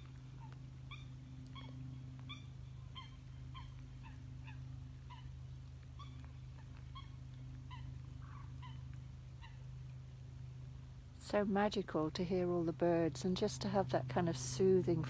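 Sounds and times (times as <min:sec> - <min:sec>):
waterfowl calling: 0:00.0 - 0:09.8
steady low hum: 0:00.0 - 0:15.0.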